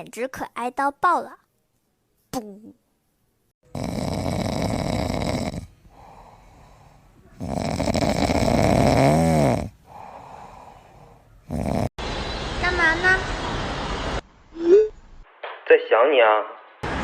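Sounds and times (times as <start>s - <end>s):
dog snoring: 3.7s - 11.9s
quiet breaths out: 9.8s - 11.4s.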